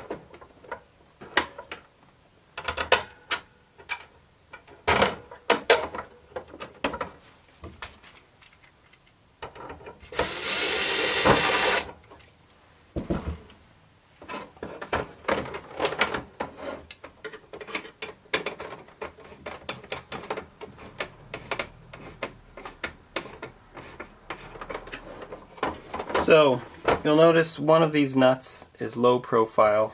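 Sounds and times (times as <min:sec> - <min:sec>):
power drill driving a screw: 0:10.1 - 0:11.9.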